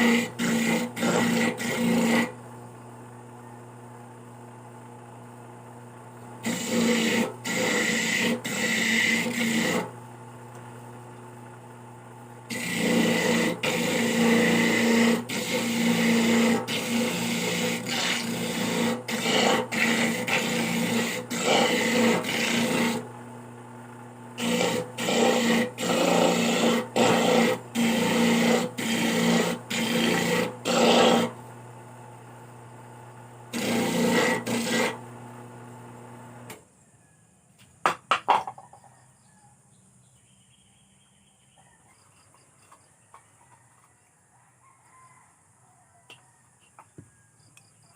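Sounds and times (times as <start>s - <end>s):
coconut grater rasping: 0.0s - 2.4s, 6.4s - 10.0s, 12.5s - 23.1s, 24.4s - 31.4s, 33.5s - 35.1s.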